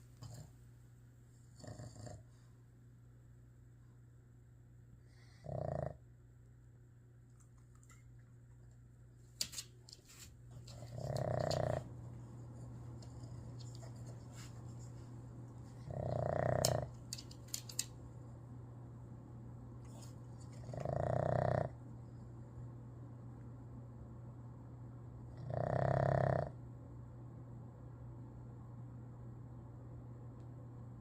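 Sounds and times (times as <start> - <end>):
steady low hum: 0.0 - 31.0
dog snoring: 1.4 - 2.4, 5.1 - 6.0, 10.7 - 11.9, 15.8 - 17.0, 20.6 - 21.8, 25.3 - 26.6.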